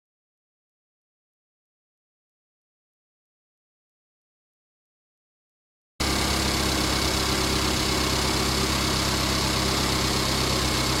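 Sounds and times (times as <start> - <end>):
car engine idling: 6.0 - 11.0.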